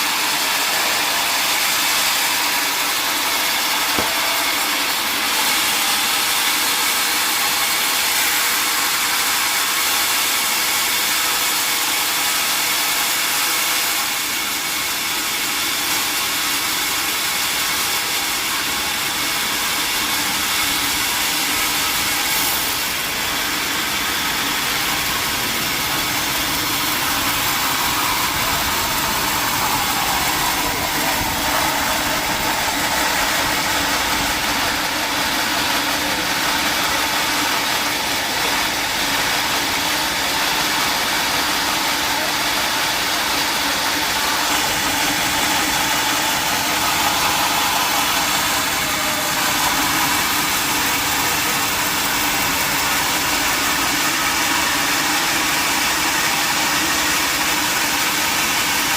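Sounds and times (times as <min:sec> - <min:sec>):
sawmill machinery hiss: 0:00.0 - 0:58.9
machine hum: 0:18.0 - 0:41.6, 0:42.4 - 0:58.9.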